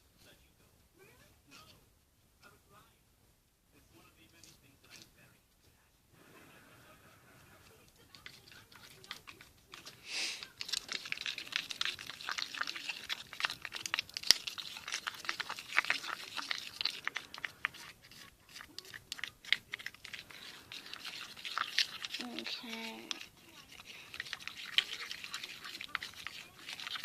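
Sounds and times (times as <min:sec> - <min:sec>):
wet slime squelch: 0:08.0 - 0:27.0
slime crackling and clicking: 0:08.1 - 0:27.0.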